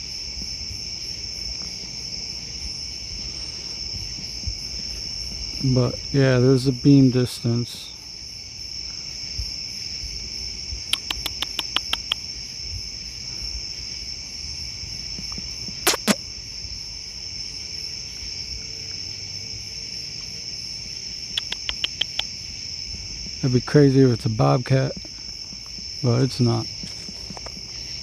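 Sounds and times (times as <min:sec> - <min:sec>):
crickets chirring: 0:00.0 - 0:28.0
sharp ticks: 0:10.9 - 0:12.2, 0:15.2 - 0:16.2, 0:21.3 - 0:22.3
brief sharp sound: 0:15.9 - 0:16.2.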